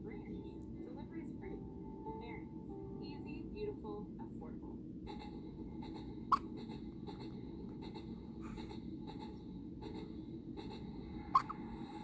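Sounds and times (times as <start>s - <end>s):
faint steady hum: 0.0s - 12.0s
baby hiccuping: 11.4s - 11.6s.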